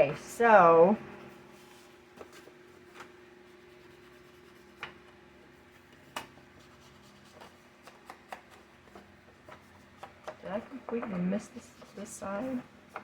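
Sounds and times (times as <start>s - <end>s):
faint steady hum: 0.0s - 13.0s
light rubbing of paper: 1.2s - 4.8s, 6.6s - 13.0s.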